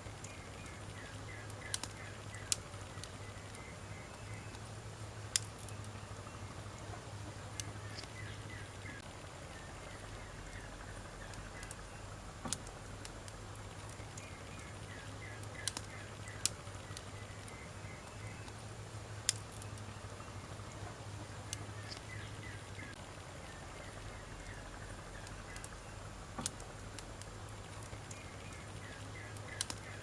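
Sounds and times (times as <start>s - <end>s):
wood fire crackling: 0.0s - 30.0s
sharp pops of fire: 0.6s - 3.6s, 5.2s - 5.9s, 12.4s - 17.6s, 19.2s - 19.9s, 24.4s - 30.0s.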